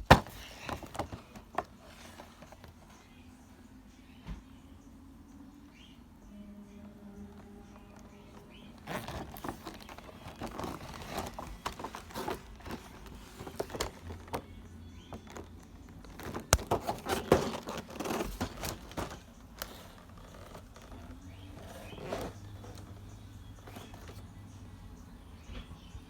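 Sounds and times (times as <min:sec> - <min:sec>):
packaging crinkling and rustling: 0:00.0 - 0:02.8, 0:08.4 - 0:14.5, 0:15.1 - 0:23.0, 0:23.6 - 0:24.2
plastic parts knocking: 0:00.0 - 0:02.8, 0:08.8 - 0:14.5, 0:15.1 - 0:23.0
plastic clicks: 0:15.1 - 0:21.0.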